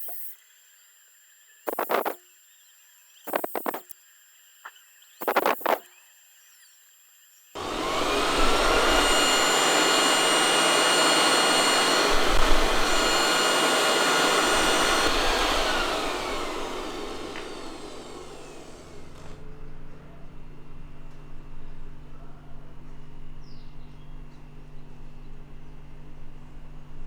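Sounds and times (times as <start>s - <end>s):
vacuum motor whining and rushing: 7.6s - 19.4s.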